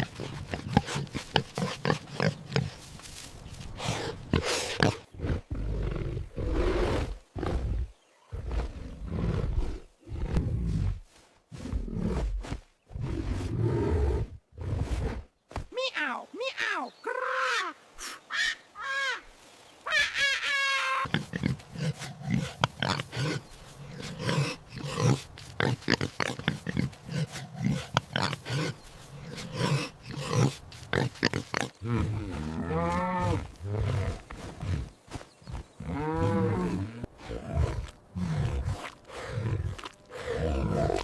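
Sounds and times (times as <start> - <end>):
pig grunting: 21.0 - 41.0.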